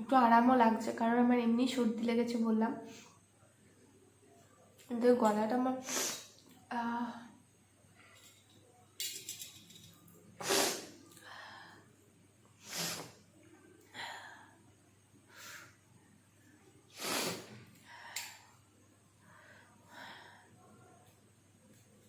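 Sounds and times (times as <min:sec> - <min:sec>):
woman sniffing and snorting: 0:05.8 - 0:06.3, 0:10.4 - 0:11.0, 0:12.6 - 0:13.2, 0:16.9 - 0:17.6.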